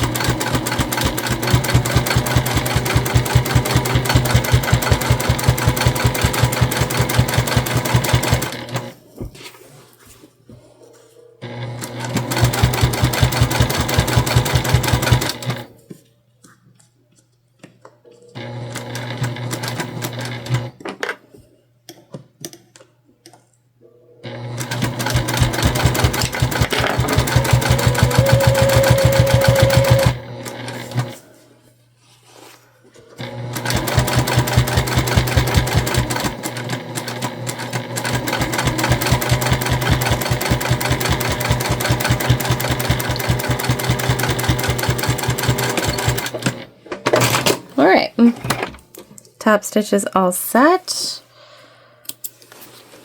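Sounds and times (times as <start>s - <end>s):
sewing machine motor hum: 0.0s - 9.0s, 11.4s - 15.7s, 18.4s - 20.7s, 24.2s - 31.2s, 33.2s - 46.7s
sewing machine stitching: 0.0s - 9.0s, 11.4s - 15.7s, 18.4s - 20.8s, 24.2s - 31.2s, 33.2s - 47.6s.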